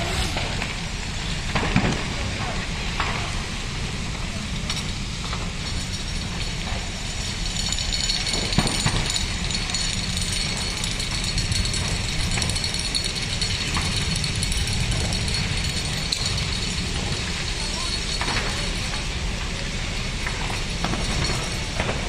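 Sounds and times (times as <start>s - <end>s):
low rumble: 0.0s - 2.5s
building fire crackling: 0.0s - 22.0s.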